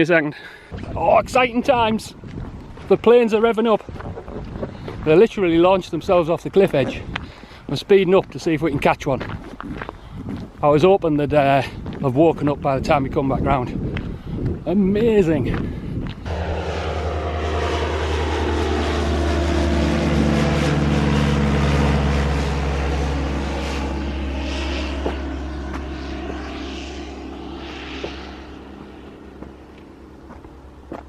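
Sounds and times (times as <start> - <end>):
propeller aircraft engine passing: 15.7 - 31.0.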